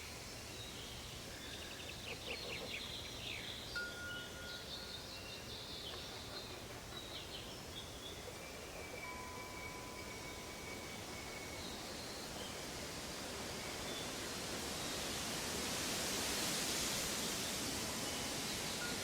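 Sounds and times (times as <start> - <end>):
forest ambience hiss: 0.0 - 19.0
long thin ringing tones: 3.7 - 5.2, 9.0 - 11.9, 17.8 - 19.0
wind chimes tinkling: 3.8 - 5.1, 9.0 - 10.6, 17.9 - 19.0.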